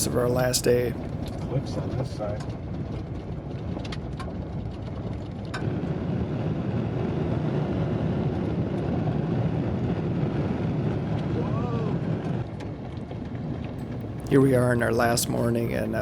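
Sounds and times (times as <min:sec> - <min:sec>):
vehicle engine rumble: 0:00.0 - 0:02.5.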